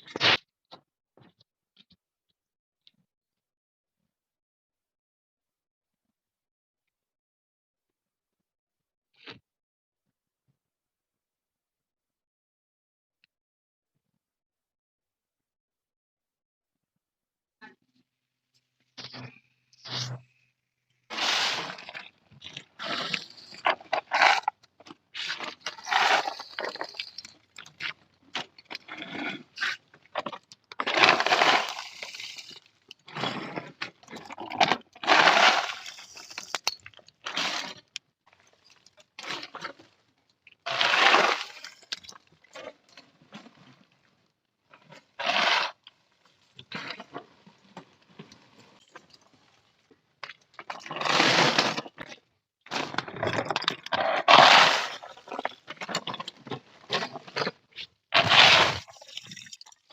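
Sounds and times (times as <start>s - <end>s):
charcoal crunching and cracking: 21.1s - 43.9s, 44.7s - 59.9s.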